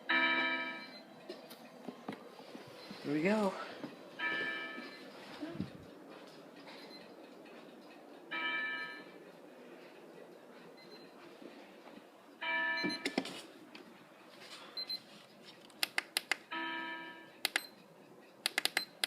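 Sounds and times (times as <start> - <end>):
alarm clock chiming tone: 0.1 - 1.1, 4.2 - 5.1, 8.3 - 9.2, 12.4 - 13.0, 16.5 - 17.4
sharp clicks: 15.7 - 16.5, 17.4 - 17.7, 18.4 - 19.0.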